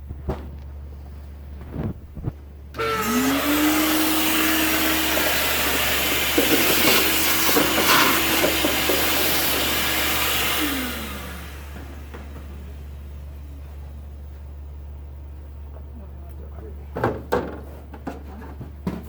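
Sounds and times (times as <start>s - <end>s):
power drill running: 2.8s - 13.4s.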